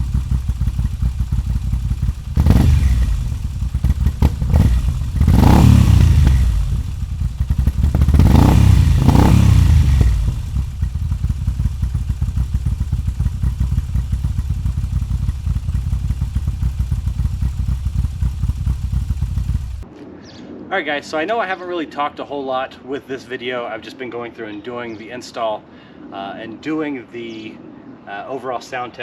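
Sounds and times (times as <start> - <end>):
motorcycle engine revving and idling: 0.0 - 19.9.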